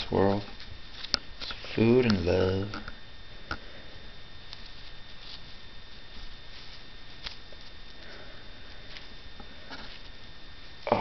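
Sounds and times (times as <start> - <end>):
fingers rustling through feathers: 4.4 - 10.9.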